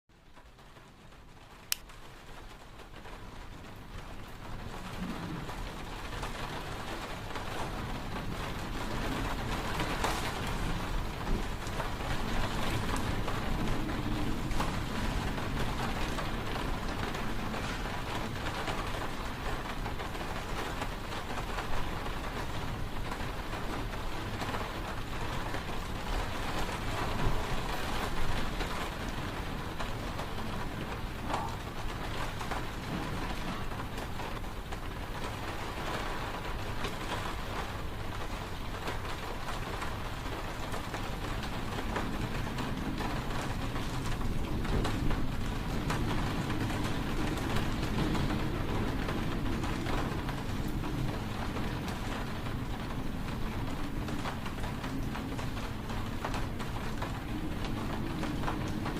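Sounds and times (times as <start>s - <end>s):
steady rain hiss: 0.1s - 58.9s
wind rumble: 1.4s - 58.9s.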